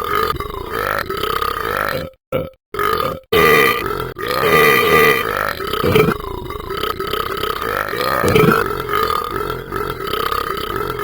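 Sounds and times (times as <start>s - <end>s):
man belching: 0.0s - 11.0s.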